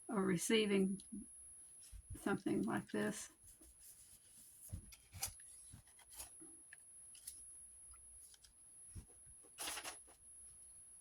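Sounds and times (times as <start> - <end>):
paper clicks and rustles: 3.5 - 6.4, 7.1 - 7.4, 8.2 - 10.2.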